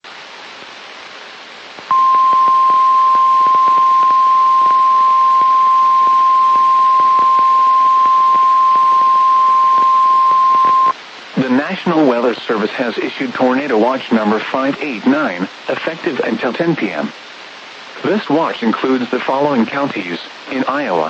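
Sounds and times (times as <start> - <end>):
radio static hiss: 0.1 - 21.0
steady high alarm tone: 1.9 - 10.9.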